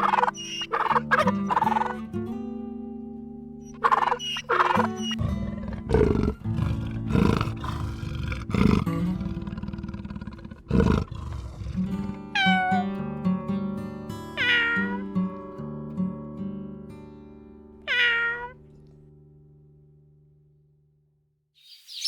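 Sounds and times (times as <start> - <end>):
animal calling harshly: 0.0 - 2.0, 3.7 - 8.9, 12.4 - 12.9, 14.4 - 15.0
guitar music: 0.0 - 20.6.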